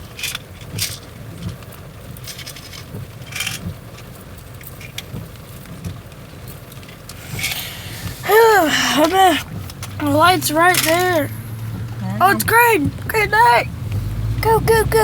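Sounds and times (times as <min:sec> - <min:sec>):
scrapes and crackles: 0:00.0 - 0:05.4
engine and road rumble: 0:00.0 - 0:15.0.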